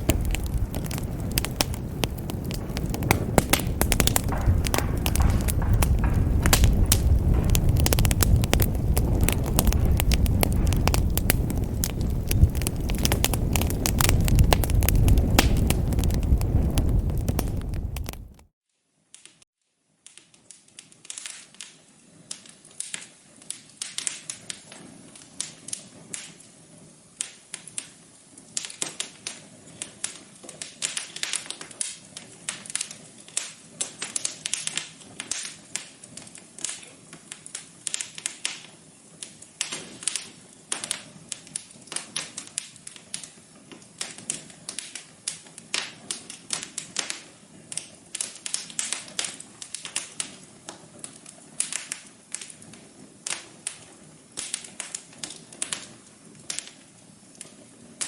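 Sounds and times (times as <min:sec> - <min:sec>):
wood fire crackling: 0:00.0 - 0:18.5, 0:20.0 - 0:58.0
soft steady hiss: 0:18.2 - 0:58.0.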